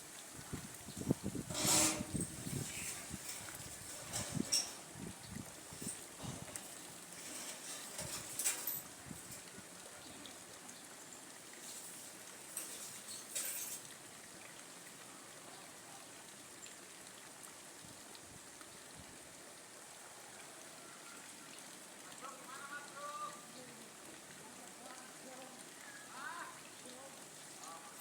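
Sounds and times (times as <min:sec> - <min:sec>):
faint outdoor hiss: 0:00.0 - 0:28.0
rustling: 0:01.5 - 0:05.0, 0:05.6 - 0:09.4, 0:11.6 - 0:13.8.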